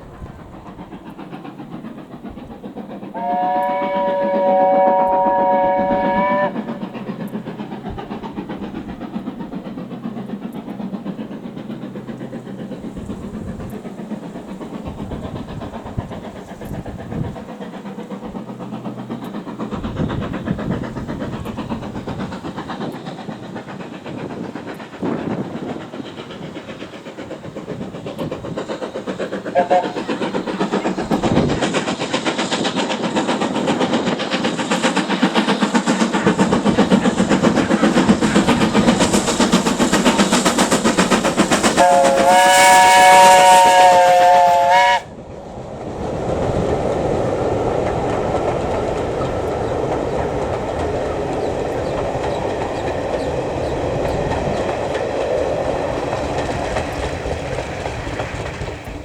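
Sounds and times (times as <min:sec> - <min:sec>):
train rumbling and clattering: 0:00.0 - 0:59.0
steam locomotive chord whistle: 0:03.1 - 0:06.8, 0:29.5 - 0:30.0, 0:41.8 - 0:45.2.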